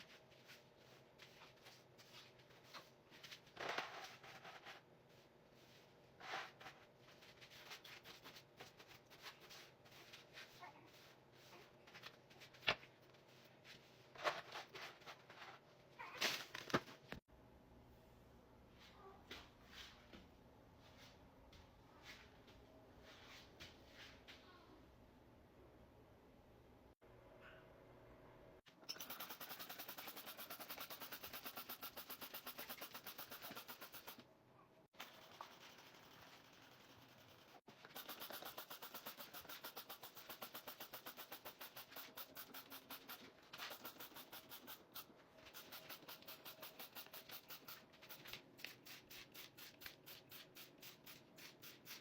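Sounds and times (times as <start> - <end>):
rapid clicks: 28.9 - 34.2, 35.0 - 48.4.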